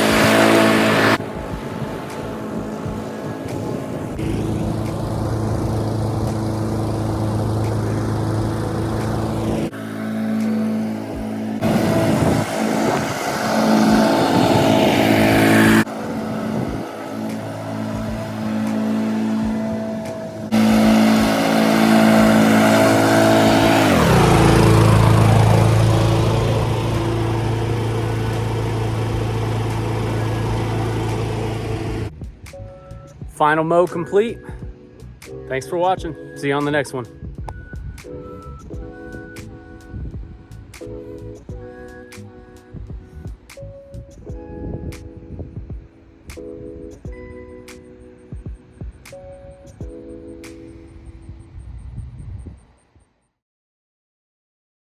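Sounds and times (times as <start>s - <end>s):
lawn mower engine running: 0.0s - 32.7s.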